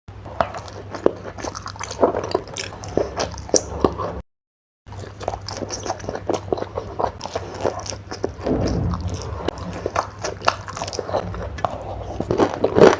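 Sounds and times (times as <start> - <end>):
biting and chewing: 0.2 - 4.2, 4.9 - 12.9
low steady hum: 4.9 - 12.9.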